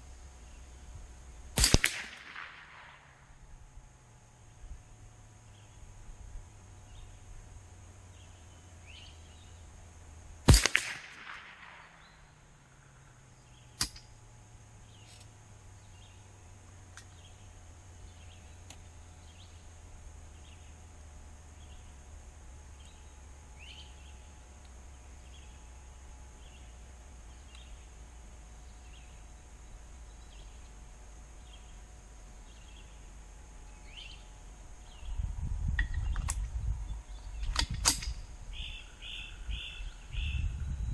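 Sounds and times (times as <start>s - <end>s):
low steady hum: 0.0s - 40.9s
sharp crack: 1.6s - 3.4s, 10.5s - 12.9s, 13.8s - 14.1s, 37.5s - 38.3s.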